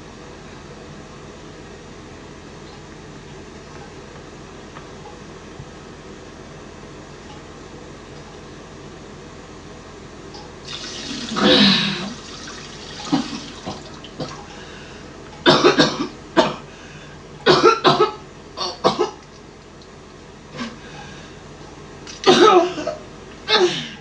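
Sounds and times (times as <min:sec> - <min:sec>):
man coughing: 0:11.3 - 0:12.1, 0:15.5 - 0:16.7, 0:17.5 - 0:19.2, 0:22.2 - 0:24.0.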